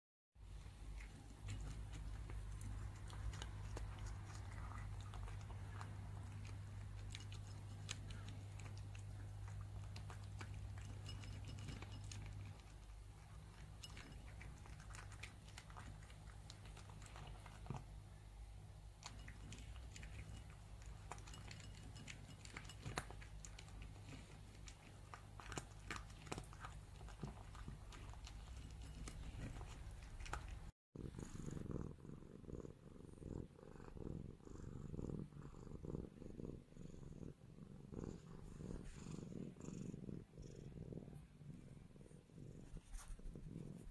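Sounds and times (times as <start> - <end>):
low steady hum: 0.4 - 31.4
cat purring: 0.5 - 43.9.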